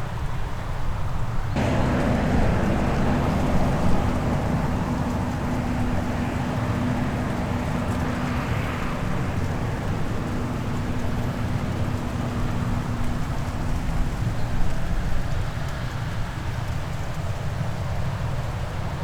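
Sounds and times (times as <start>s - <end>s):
loud rushing noise: 1.6s - 14.6s
steady hum: 1.6s - 14.7s
diesel engine running: 1.6s - 16.5s.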